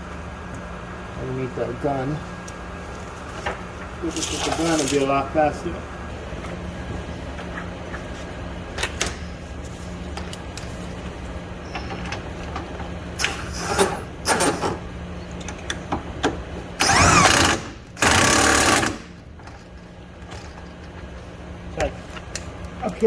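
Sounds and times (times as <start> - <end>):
impact wrench bursts: 13.2 - 14.8, 16.8 - 19.2.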